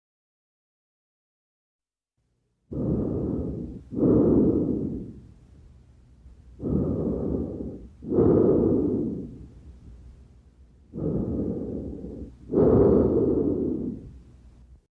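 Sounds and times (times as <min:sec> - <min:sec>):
breathing lung sounds: 0:02.7 - 0:05.7, 0:06.4 - 0:14.6.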